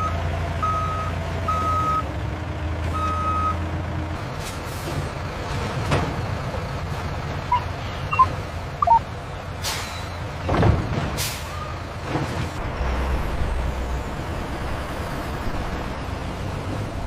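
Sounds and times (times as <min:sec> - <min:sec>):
short high beeps: 0:07.5 - 0:09.0.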